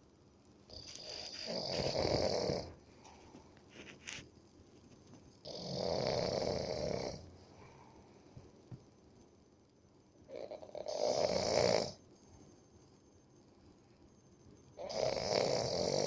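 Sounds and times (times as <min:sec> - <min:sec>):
person snoring: 0:00.7 - 0:02.8, 0:05.5 - 0:07.3, 0:10.3 - 0:12.0, 0:14.8 - 0:16.0.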